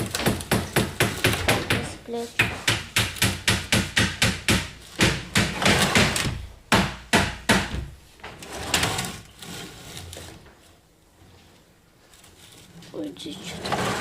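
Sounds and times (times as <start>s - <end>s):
hammer striking nails into wood: 0.0s - 8.0s
soft knocks: 0.2s - 8.4s.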